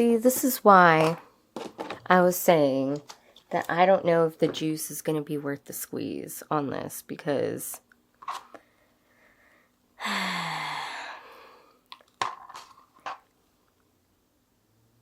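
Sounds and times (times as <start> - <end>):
woman sighing with a groan: 10.0 - 11.8.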